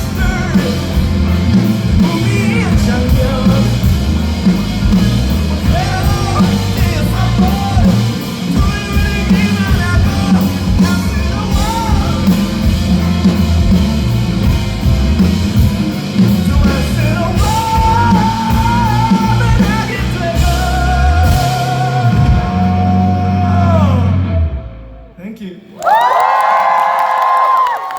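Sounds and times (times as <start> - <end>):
person singing: 0.0 - 13.8, 16.1 - 24.6
rock band playing: 0.0 - 25.2.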